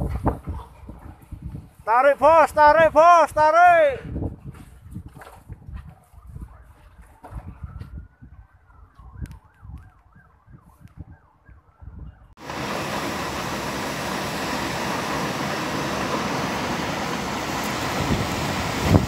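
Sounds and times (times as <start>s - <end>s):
wind buffeting microphone: 0.0s - 19.0s
siren wailing and yelping: 7.6s - 12.3s
loud steady rushing noise: 12.4s - 19.0s.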